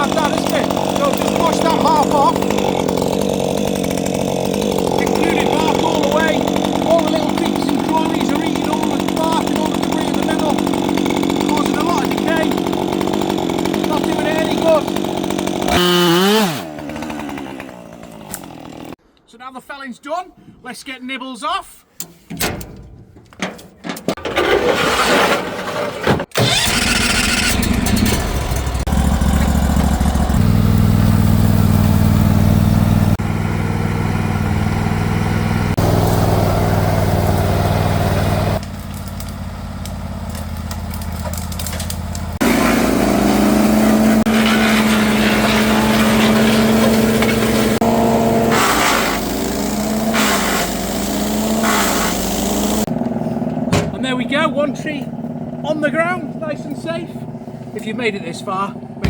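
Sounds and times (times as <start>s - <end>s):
small petrol engine running: 0.0s - 19.0s, 26.3s - 59.0s.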